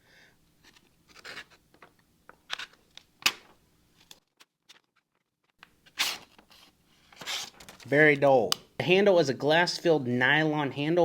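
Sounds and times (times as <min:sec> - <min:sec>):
knife blade scraping through paper: 0:01.1 - 0:01.6, 0:05.9 - 0:07.6.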